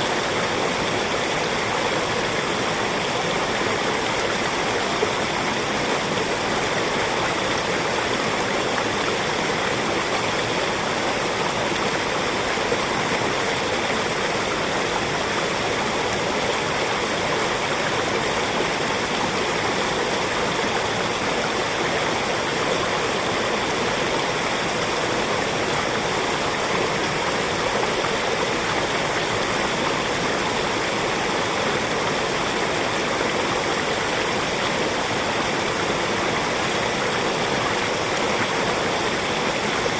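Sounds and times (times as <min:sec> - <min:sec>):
stream babbling over rocks: 0:00.0 - 0:39.9.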